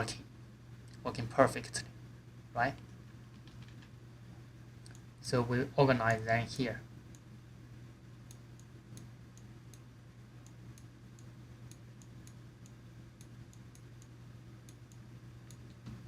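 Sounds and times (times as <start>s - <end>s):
low steady hum: 0.0s - 16.0s
computer mouse clicks: 3.3s - 3.9s.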